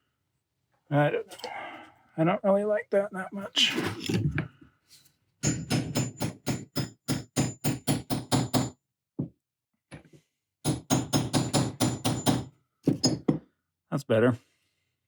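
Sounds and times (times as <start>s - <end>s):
hammer tapping on metal: 5.4s - 8.7s.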